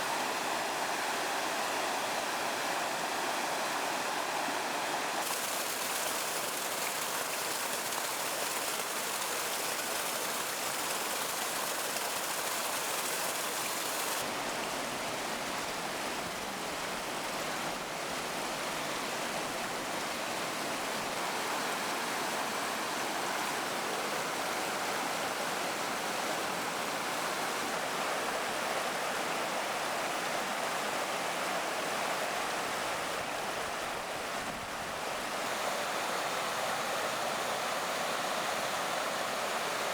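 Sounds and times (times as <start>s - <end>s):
water rushing over rocks: 5.2s - 14.4s.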